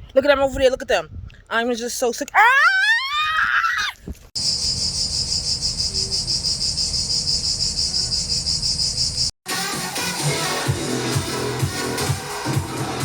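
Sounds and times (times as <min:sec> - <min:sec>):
cicadas buzzing: 0:04.4 - 0:09.3
music: 0:09.5 - 0:13.0.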